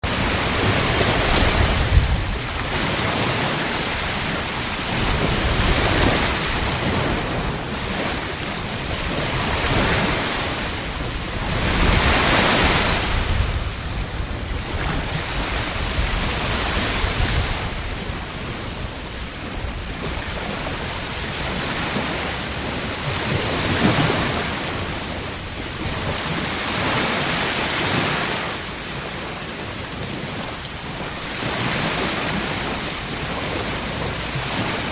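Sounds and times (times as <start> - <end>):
sea waves breaking on shore: 0.0 - 34.9.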